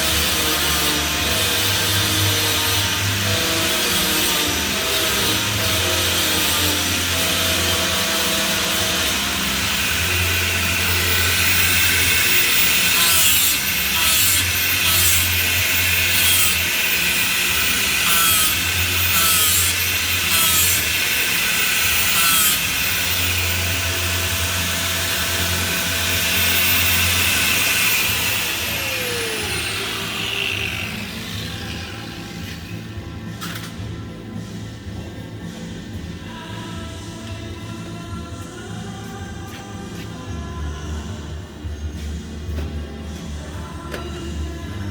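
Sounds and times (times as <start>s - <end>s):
angle grinder grinding metal: 0.0s - 33.8s.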